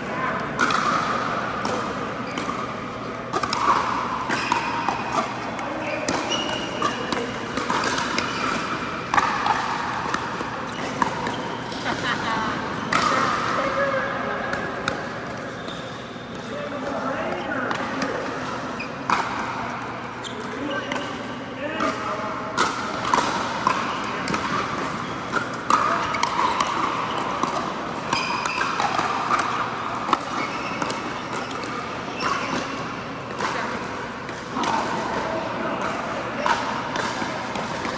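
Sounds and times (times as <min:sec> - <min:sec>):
background play on courts: 0:00.0 - 0:37.9
ball bouncing on court: 0:00.3 - 0:37.9
paddles hitting plastic ball: 0:00.5 - 0:13.8, 0:22.6 - 0:37.9.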